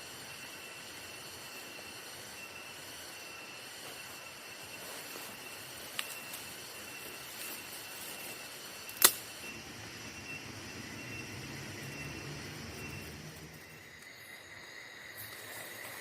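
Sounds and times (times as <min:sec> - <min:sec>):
campfire hissing: 0:00.0 - 0:16.0
faint steady high tone: 0:00.0 - 0:16.0.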